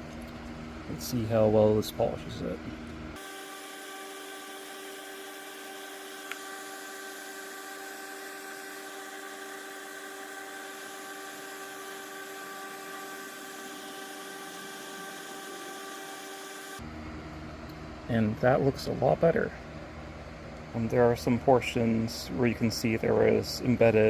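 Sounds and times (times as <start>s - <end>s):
polishing machine humming and hissing: 0.0s - 19.6s.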